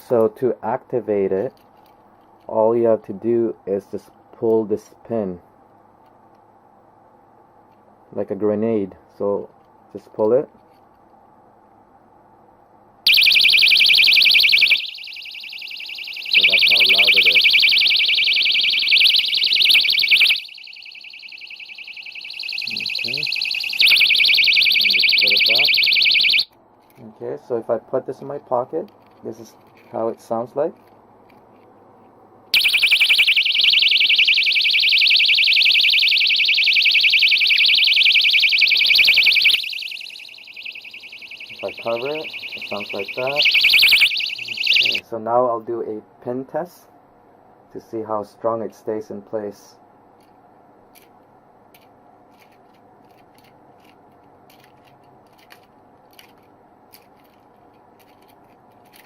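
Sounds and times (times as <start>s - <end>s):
personal alarm siren warbling: 13.1s - 26.5s, 32.6s - 45.0s.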